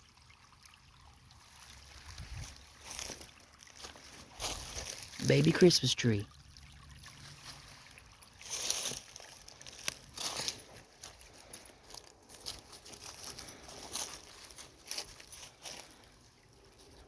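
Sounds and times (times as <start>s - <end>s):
faint babbling creek: 0.0s - 17.0s
dry leaves crunching and rustling: 1.6s - 5.7s, 8.4s - 17.0s.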